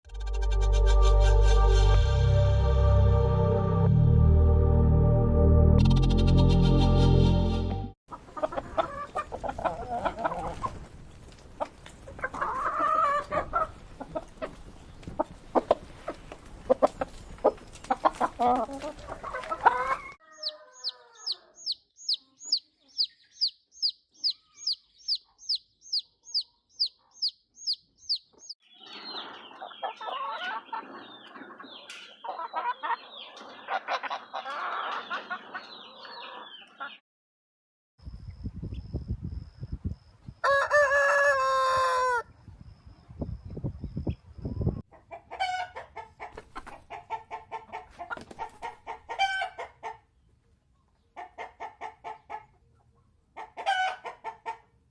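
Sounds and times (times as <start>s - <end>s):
hens clucking: 8.1s - 10.9s, 11.6s - 28.6s, 29.3s - 37.0s, 44.9s - 50.1s, 51.2s - 52.7s, 53.4s - 54.8s
chicks peeping: 12.2s - 37.0s
rooster crowing: 19.8s - 21.8s, 40.4s - 42.3s.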